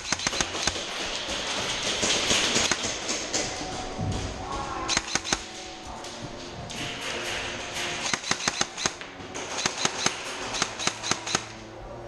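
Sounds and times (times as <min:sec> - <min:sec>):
airsoft guns firing: 0:00.0 - 0:03.8, 0:04.4 - 0:05.8, 0:07.3 - 0:11.6.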